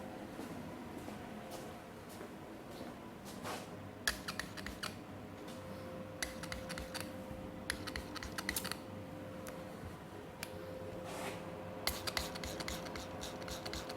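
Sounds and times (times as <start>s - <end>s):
faint steady hum: 0.0s - 13.9s
hand tools clicking and tapping: 4.1s - 5.0s, 6.2s - 7.1s, 7.7s - 8.8s, 11.9s - 13.9s.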